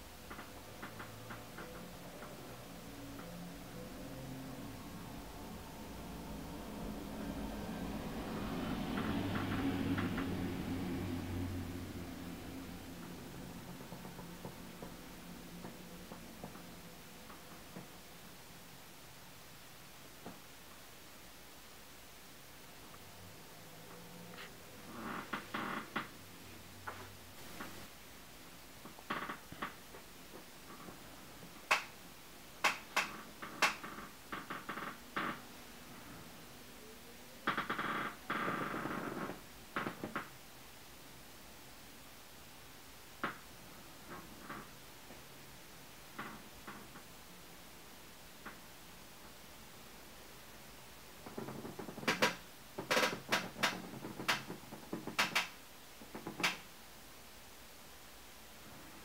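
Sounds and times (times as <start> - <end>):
sharp clicks and knocks: 0.2 - 2.5, 32.6 - 34.7, 51.2 - 56.7.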